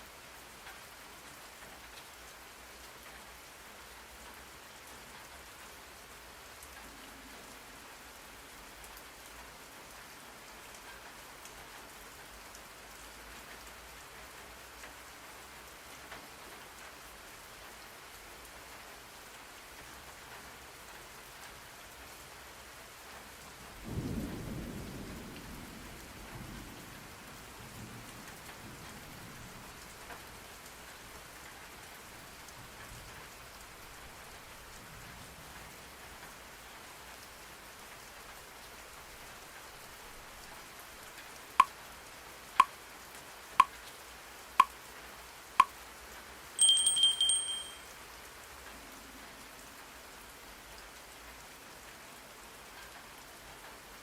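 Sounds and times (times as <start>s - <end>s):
steady rain: 0.0s - 54.0s
alarm: 46.6s - 47.8s
electronic timer beeps: 46.6s - 47.8s.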